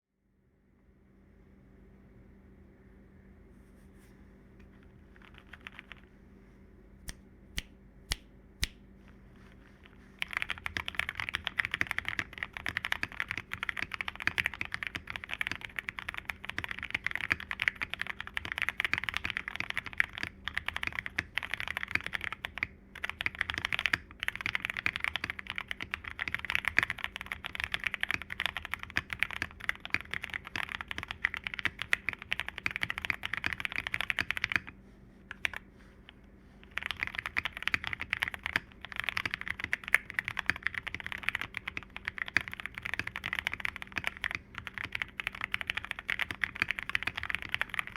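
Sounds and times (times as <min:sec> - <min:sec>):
mechanical keyboard typing: 0:05.2 - 0:06.1, 0:10.2 - 0:34.7, 0:35.3 - 0:35.6, 0:36.6 - 0:47.9.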